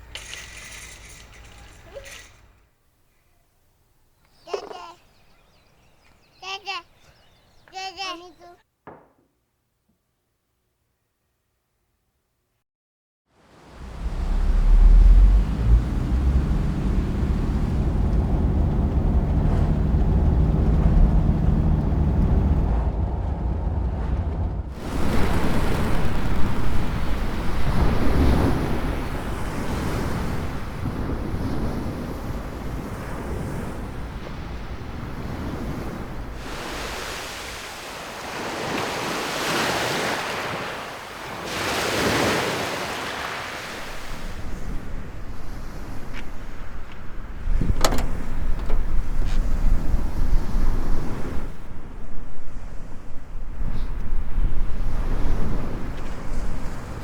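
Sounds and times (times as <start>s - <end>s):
waves washing onto shore: 13.5s - 57.0s
low steady rumble: 13.6s - 32.9s, 47.1s - 57.0s.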